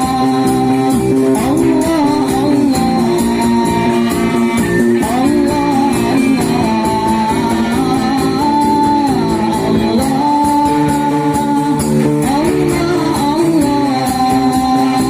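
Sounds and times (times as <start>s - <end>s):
instrumental accompaniment with beat: 0.0s - 15.0s
person singing devotional song: 0.0s - 15.0s.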